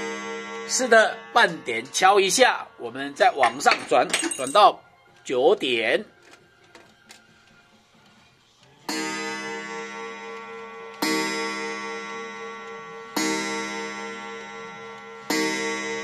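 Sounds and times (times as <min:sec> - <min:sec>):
wall clock chime striking: 0:00.0 - 0:04.8, 0:08.9 - 0:16.0.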